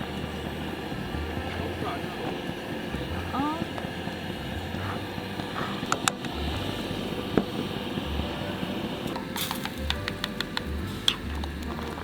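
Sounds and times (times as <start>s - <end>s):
campfire crackling and popping: 0.0s - 12.0s
low steady rumble: 0.0s - 12.0s.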